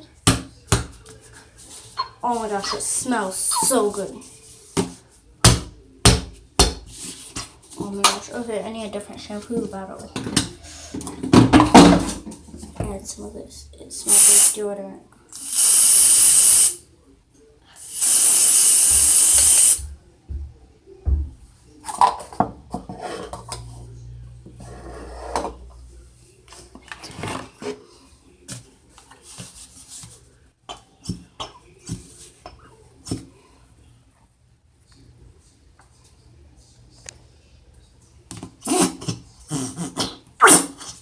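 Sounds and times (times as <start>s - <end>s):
aerosol spray can hissing: 14.1s - 14.6s, 15.4s - 16.8s, 17.8s - 19.8s.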